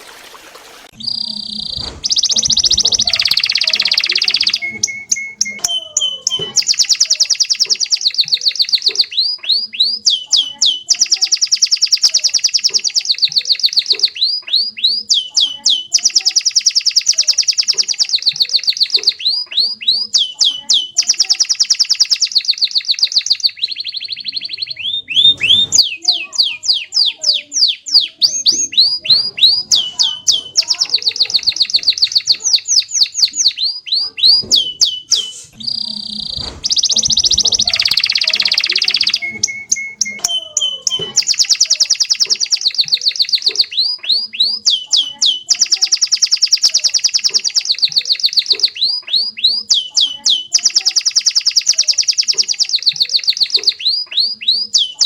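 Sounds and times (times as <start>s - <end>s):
canary singing trills: 0.9s - 55.0s.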